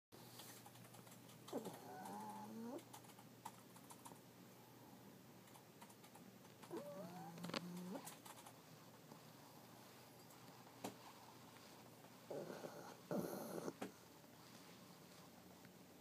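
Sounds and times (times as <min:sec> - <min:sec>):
faint keyboard clicks: 0:00.4 - 0:04.2, 0:05.4 - 0:08.6
dog snoring: 0:01.5 - 0:02.8, 0:06.7 - 0:08.1, 0:12.3 - 0:13.9.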